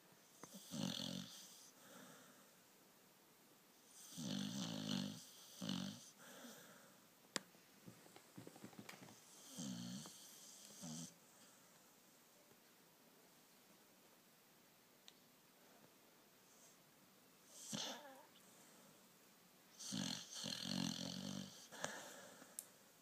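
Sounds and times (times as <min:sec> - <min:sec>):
dog snoring: 0:00.4 - 0:01.7, 0:03.9 - 0:06.6, 0:09.2 - 0:11.2, 0:17.5 - 0:18.3, 0:19.7 - 0:21.7.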